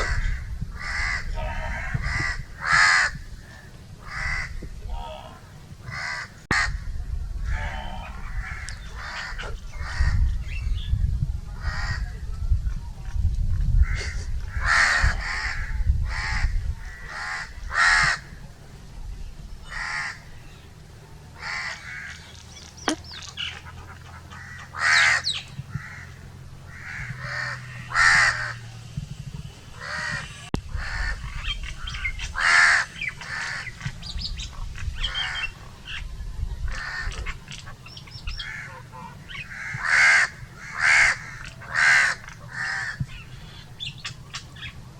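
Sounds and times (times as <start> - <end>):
crows cawing: 0.0 - 4.6, 5.8 - 6.8, 7.4 - 10.2, 13.8 - 18.3, 19.7 - 20.3, 21.4 - 22.3, 23.4 - 28.6, 29.8 - 33.8, 36.8 - 37.2, 38.4 - 43.1
steady low rumble: 0.0 - 44.9.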